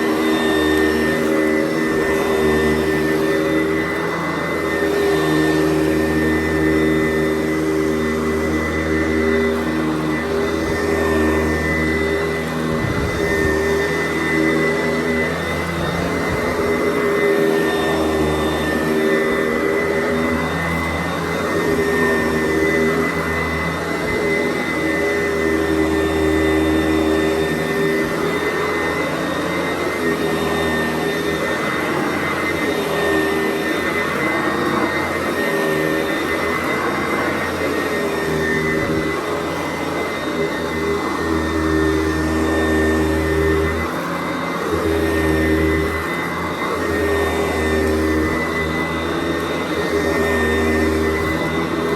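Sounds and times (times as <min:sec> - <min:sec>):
vacuum cleaner running: 0:00.0 - 0:51.9.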